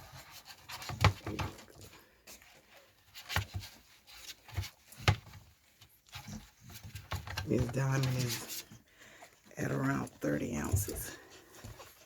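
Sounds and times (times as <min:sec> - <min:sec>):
puppy scrabbling and rustling: 0:00.0 - 0:08.9.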